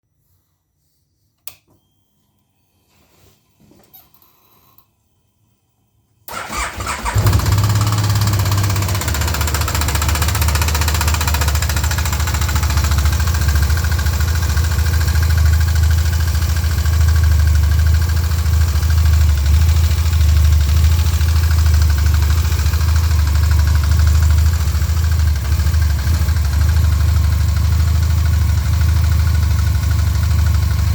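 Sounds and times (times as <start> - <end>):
engine cranking: 6.3 - 11.9.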